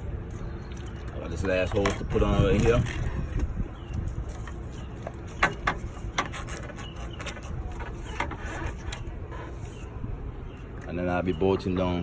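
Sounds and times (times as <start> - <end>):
rubber hose rubbing and scraping: 1.4 - 10.2.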